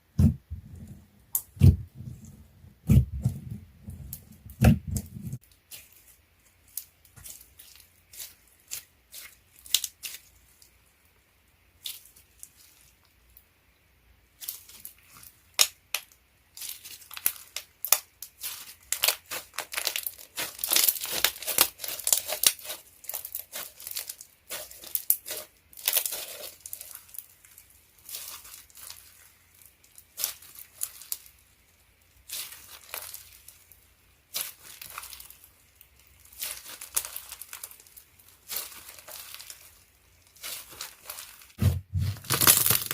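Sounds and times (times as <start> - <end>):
sticky slime crackles and pops: 5.4 - 10.3, 14.4 - 31.4, 32.2 - 42.9.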